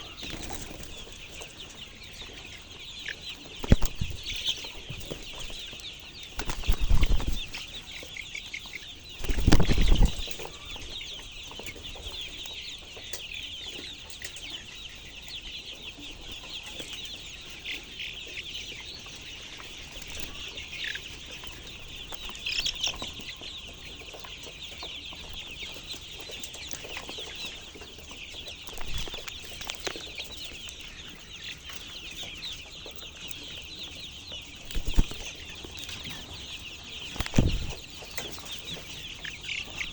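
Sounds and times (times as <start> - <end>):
chickens clucking and chirping: 0.0 - 39.9
loud thumps: 37.2 - 37.8.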